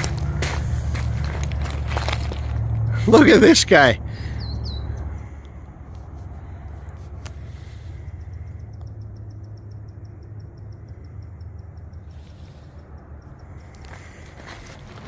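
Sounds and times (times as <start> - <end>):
steady low rumble: 0.0 - 3.1
faint high ticks: 8.5 - 14.0.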